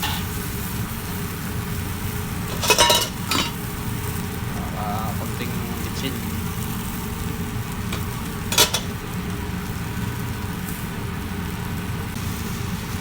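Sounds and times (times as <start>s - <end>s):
metal utensil striking a pan: 0.0s - 0.4s, 2.5s - 3.6s, 7.9s - 8.9s
chicken cooking in a pan: 0.0s - 13.0s.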